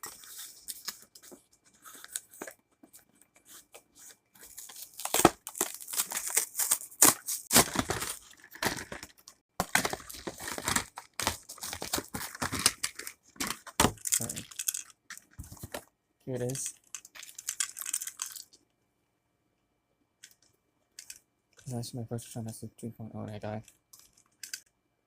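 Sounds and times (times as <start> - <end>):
packaging tearing and crinkling: 4.5 - 15.6.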